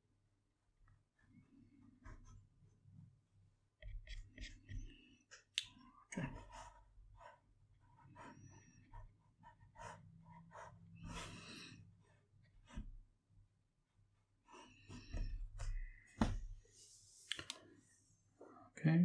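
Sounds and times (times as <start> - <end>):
paintbrush brushing and scraping: 16.6 - 18.0.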